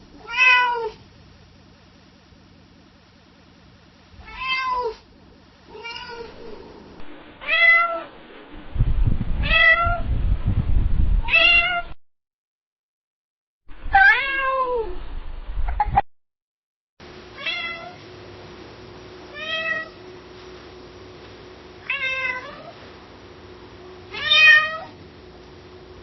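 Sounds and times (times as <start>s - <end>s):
cat meowing: 0.2s - 1.0s, 4.2s - 5.0s, 5.7s - 6.6s, 11.2s - 11.9s, 13.9s - 14.9s, 17.4s - 18.0s, 19.3s - 20.0s, 21.8s - 22.7s, 24.1s - 25.0s
low rumble: 5.1s - 11.9s, 14.8s - 16.0s.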